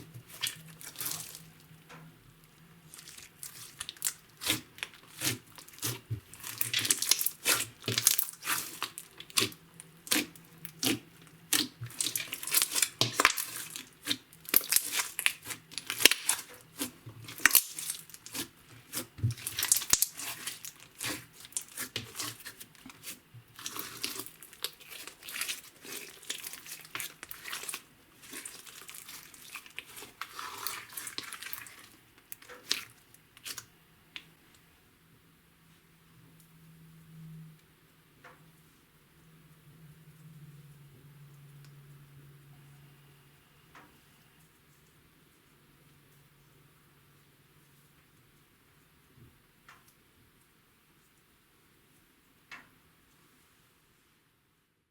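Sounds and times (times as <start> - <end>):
wet slime squelching: 0.0 - 2.0, 2.6 - 34.4
slime popping and crackling: 0.2 - 1.5, 2.9 - 33.7.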